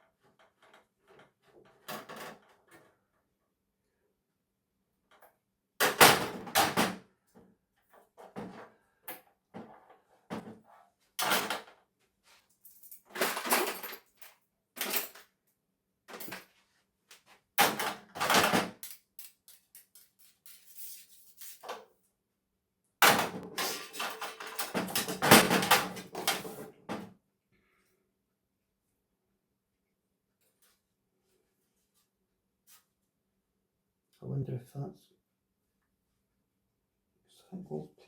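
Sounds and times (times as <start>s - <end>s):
parts rattling and clinking: 12.6s - 15.3s, 23.0s - 26.7s
small parts clattering: 12.6s - 15.4s, 17.6s - 21.8s, 23.0s - 26.7s.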